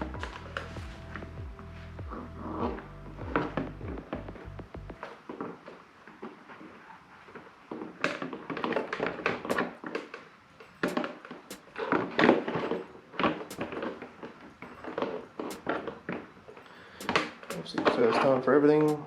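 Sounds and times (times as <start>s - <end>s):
parts clicking and knocking by hand: 8.0s - 10.2s, 10.8s - 16.2s, 17.0s - 19.0s.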